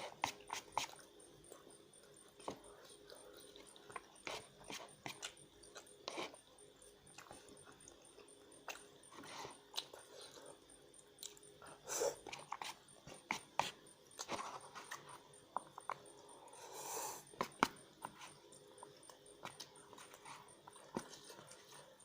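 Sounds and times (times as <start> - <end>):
wet chewing and mouth smacks: 7.1 - 9.0, 9.6 - 10.4, 11.2 - 11.5.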